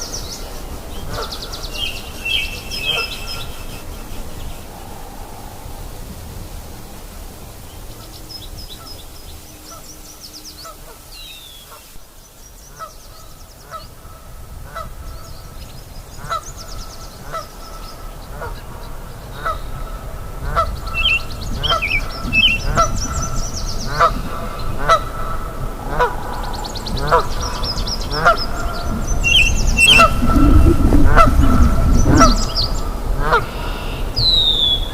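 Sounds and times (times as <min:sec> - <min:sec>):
stream babbling: 0:00.0 - 0:09.4, 0:22.9 - 0:34.9
short pitched bird calls: 0:27.0 - 0:34.9
high chirping trills: 0:27.5 - 0:33.1.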